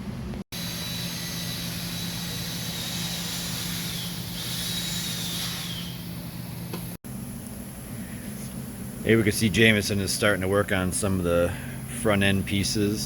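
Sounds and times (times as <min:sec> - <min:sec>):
steady low hum: 0:00.0 - 0:13.0
high-speed power tool whining: 0:00.6 - 0:06.2.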